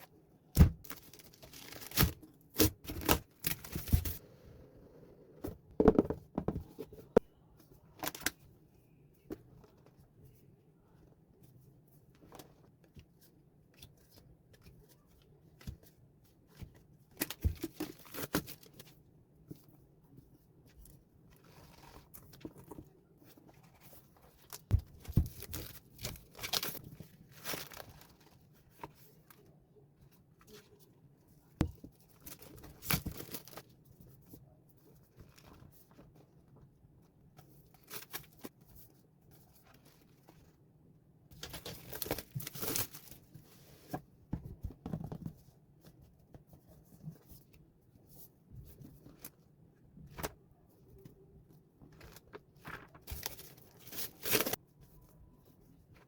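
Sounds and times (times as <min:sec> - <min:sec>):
packaging tearing and crinkling: 0:00.8 - 0:04.2, 0:52.7 - 0:54.6.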